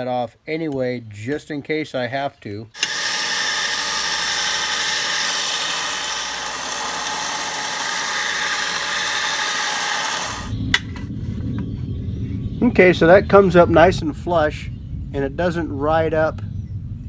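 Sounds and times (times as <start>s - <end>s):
power tool grinding metal: 2.8s - 10.5s
low rumble: 9.7s - 17.0s.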